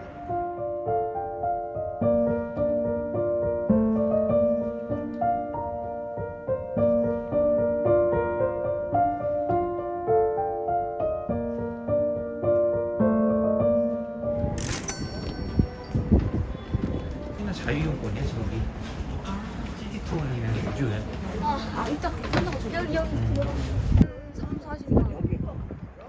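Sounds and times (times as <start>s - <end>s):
gentle piano melody: 0.0s - 19.3s.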